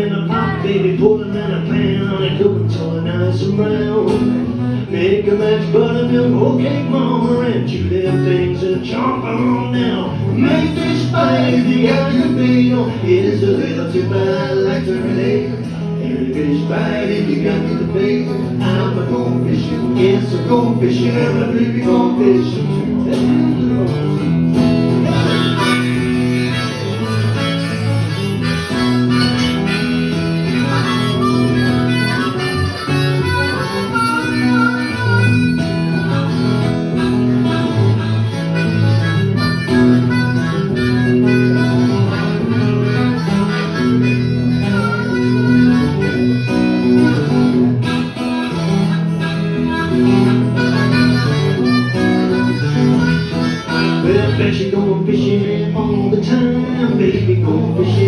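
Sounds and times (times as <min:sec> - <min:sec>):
acoustic guitar accompaniment: 0:00.0 - 0:58.0
harmonica solo: 0:00.2 - 0:02.7, 0:09.4 - 0:54.8.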